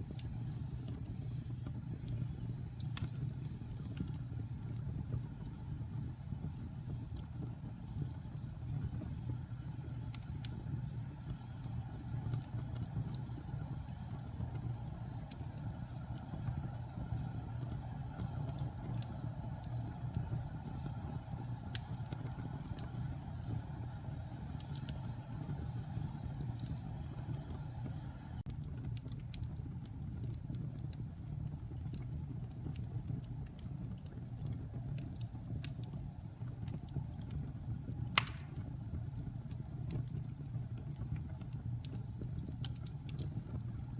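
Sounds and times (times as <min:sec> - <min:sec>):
fire crackling and popping: 0:00.0 - 0:43.9
low rumble of flames: 0:00.0 - 0:43.9
loud sharp crack: 0:38.2 - 0:38.6.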